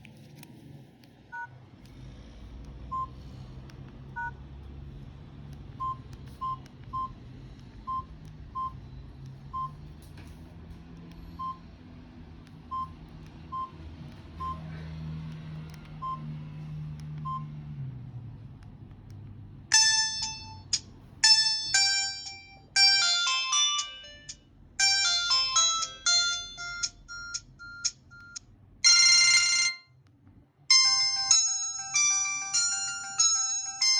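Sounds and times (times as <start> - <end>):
polyphonic ringtone melody: 19.7 - 29.9, 30.7 - 33.9.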